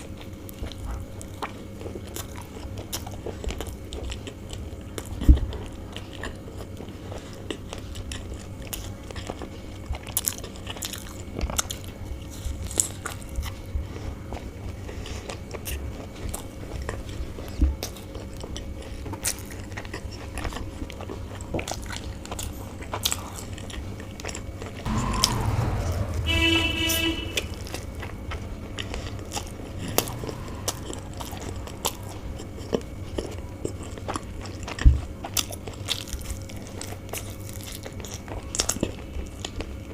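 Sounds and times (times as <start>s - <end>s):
chewing and biting food: 0.0s - 24.8s, 30.8s - 39.9s
short pitched sound: 24.9s - 32.6s.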